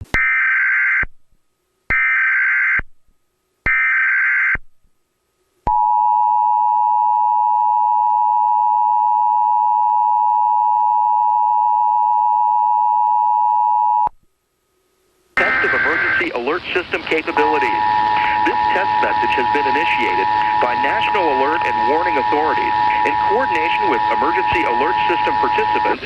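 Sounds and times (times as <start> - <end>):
harsh data bursts: 15.4 - 26.0
two-tone attention signal: 15.4 - 26.0.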